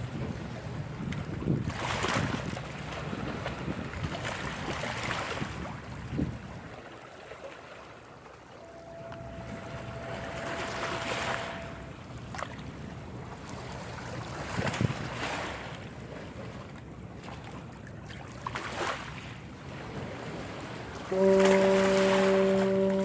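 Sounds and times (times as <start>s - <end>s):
wind on microphone: 0.0s - 6.8s, 19.7s - 23.0s
water washing along hull: 0.0s - 23.0s
ship's horn: 7.6s - 15.7s, 19.6s - 23.0s.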